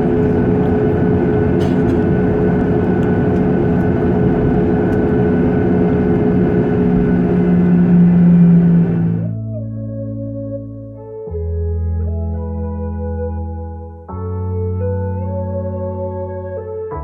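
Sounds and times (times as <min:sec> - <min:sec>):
jet engines rumbling in cabin: 0:00.0 - 0:09.4.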